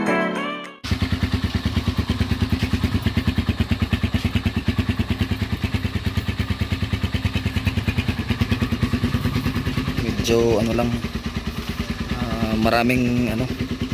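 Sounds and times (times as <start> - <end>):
motorcycle engine idling: 0.8 - 13.9.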